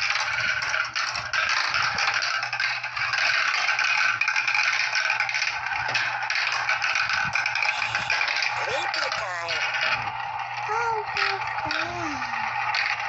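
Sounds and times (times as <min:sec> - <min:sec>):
marbles rattling down track: 0:00.0 - 0:13.0.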